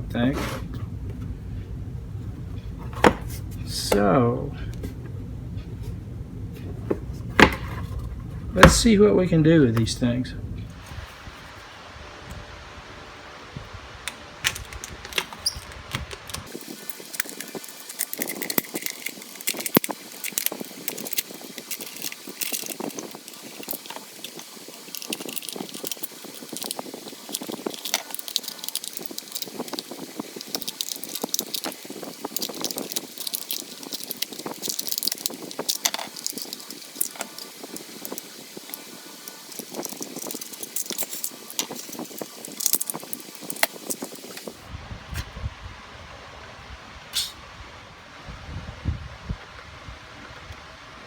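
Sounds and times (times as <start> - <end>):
small hard parts clicking and rattling: 14.4 - 44.7.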